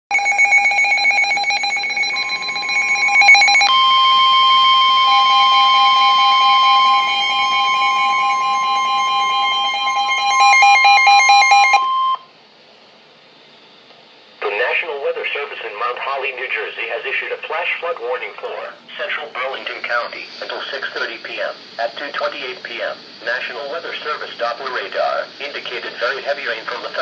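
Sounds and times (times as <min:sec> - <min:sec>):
pulsing electronic alert tone: 0:00.1 - 0:12.2
two-tone attention signal: 0:00.1 - 0:12.3.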